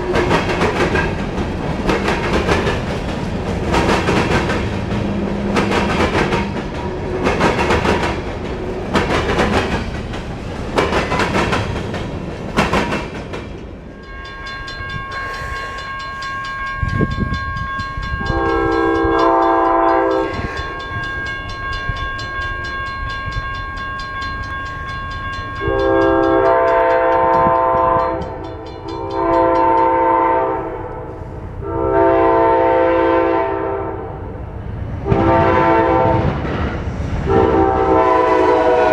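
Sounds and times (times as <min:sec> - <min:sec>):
train wheels clacking: 0:00.0 - 0:30.3
steady ringing: 0:13.6 - 0:29.8
locomotive horn blasts: 0:13.9 - 0:22.7, 0:25.4 - 0:34.2, 0:35.0 - 0:36.3, 0:37.3 - 0:38.9.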